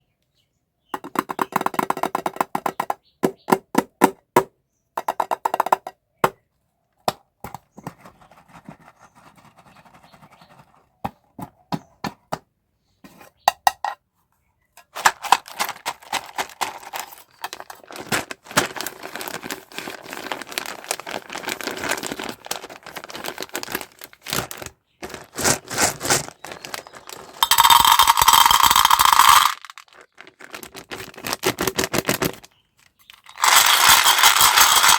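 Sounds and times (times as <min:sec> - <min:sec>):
packaging clicks and taps: 0:14.8 - 0:34.9.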